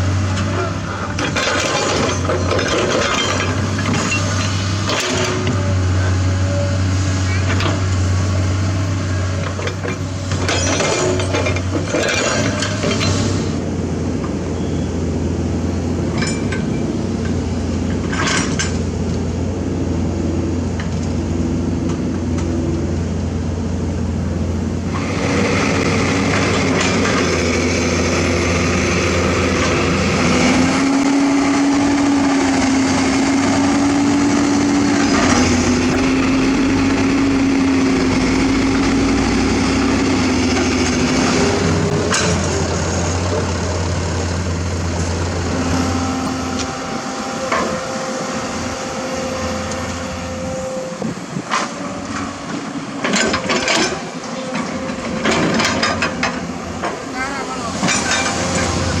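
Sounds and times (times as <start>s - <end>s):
heavy diesel engine revving: 22.8s - 59.0s.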